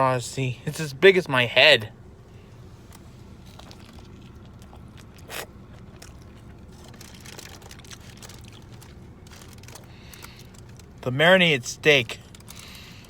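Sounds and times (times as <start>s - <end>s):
steady low hum: 0.0s - 13.0s
man chewing food: 2.5s - 11.0s
food crunch: 2.9s - 11.0s, 12.1s - 13.0s.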